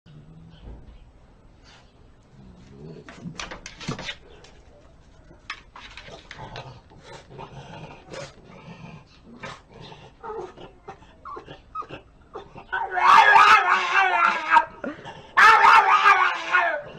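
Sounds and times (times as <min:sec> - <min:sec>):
dog whining and vocalizing: 0:09.5 - 0:12.9.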